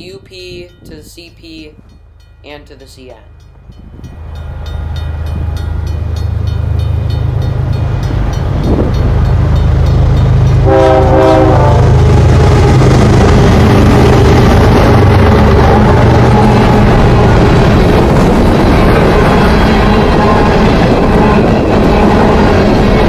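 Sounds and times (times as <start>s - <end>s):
diesel locomotive engine drone: 0.0s - 23.0s
rush of train passing: 0.0s - 23.0s
train air horn blast: 10.6s - 12.1s.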